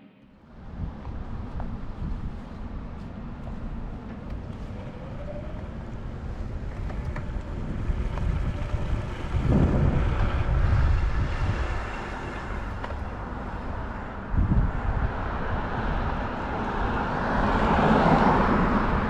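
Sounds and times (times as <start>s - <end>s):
road noise: 0.0s - 19.0s
wind buffeting microphone: 0.4s - 19.0s.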